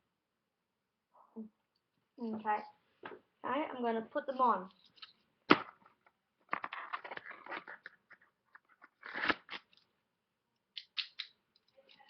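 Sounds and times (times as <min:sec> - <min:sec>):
handcuffs clicking and rattling: 0:10.8 - 0:12.0.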